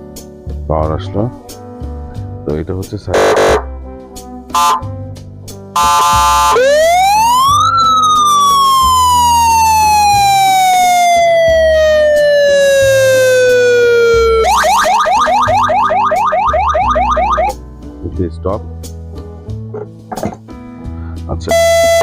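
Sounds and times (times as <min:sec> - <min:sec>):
electronic siren wailing: 0:03.2 - 0:03.6, 0:04.6 - 0:04.8, 0:05.8 - 0:17.6, 0:21.5 - 0:22.0.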